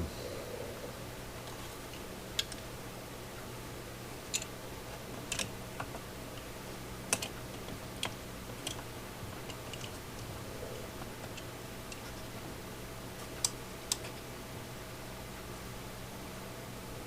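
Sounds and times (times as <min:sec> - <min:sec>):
steady low hum: 0:00.0 - 0:17.0
light clicks and taps: 0:13.2 - 0:14.2.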